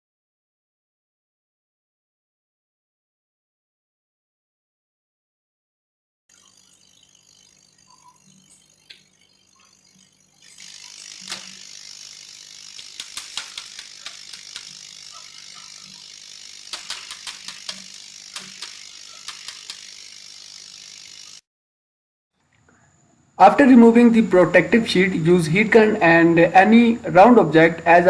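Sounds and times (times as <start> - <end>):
laser cutter hissing: 9.8 - 21.4
sharp clicks: 11.2 - 11.7, 12.7 - 20.1.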